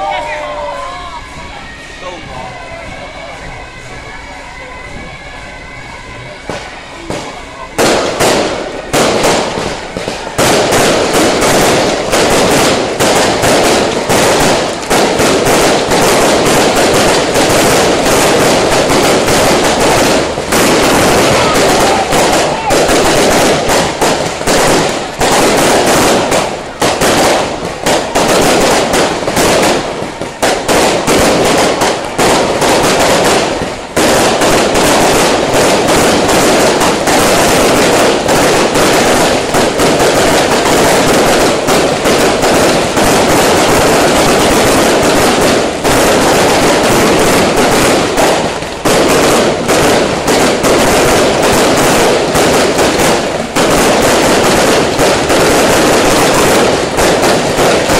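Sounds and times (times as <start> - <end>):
firecrackers crackling: 0.0 - 57.9.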